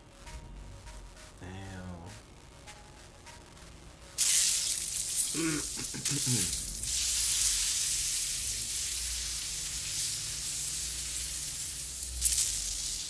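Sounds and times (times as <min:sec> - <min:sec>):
steady hissing: 0:04.2 - 0:13.0.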